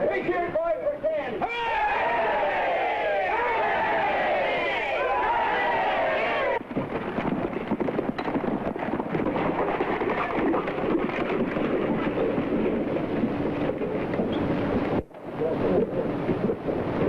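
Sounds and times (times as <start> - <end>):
crowd of men shouting: 1.4 - 6.6.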